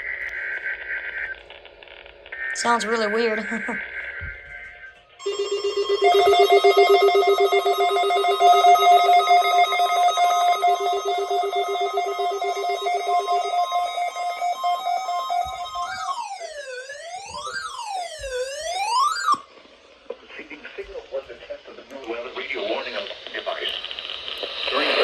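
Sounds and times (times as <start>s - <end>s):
pulsing alarm chord: 5.2s - 19.4s
wailing siren tone: 5.2s - 19.5s.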